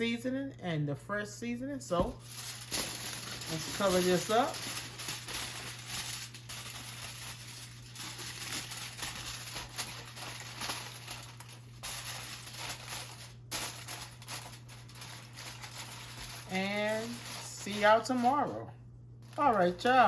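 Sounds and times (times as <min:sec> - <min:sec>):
plastic wrap crinkling and tearing: 0:02.0 - 0:18.6, 0:19.2 - 0:20.0.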